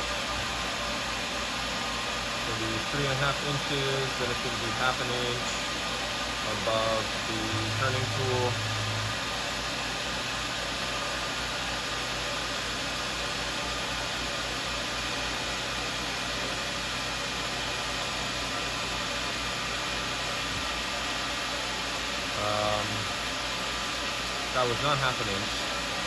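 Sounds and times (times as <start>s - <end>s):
milling machine spindle whirring: 0.0s - 11.1s
low steady hum: 2.3s - 10.5s
short pitched sound: 6.6s - 9.7s.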